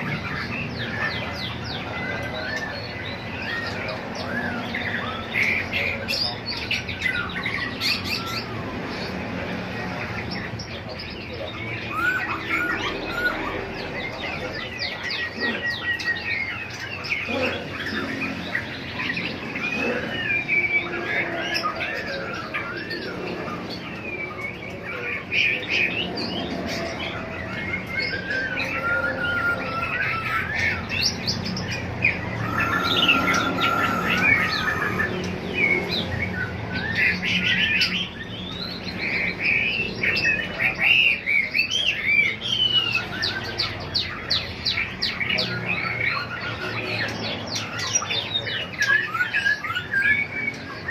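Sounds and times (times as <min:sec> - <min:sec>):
songbirds chirping: 0:00.0 - 0:50.9.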